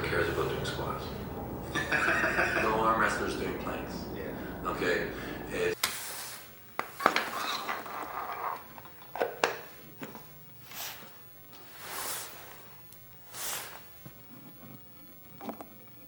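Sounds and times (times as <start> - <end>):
short bursts of hiss: 5.8 - 6.6, 10.6 - 14.1.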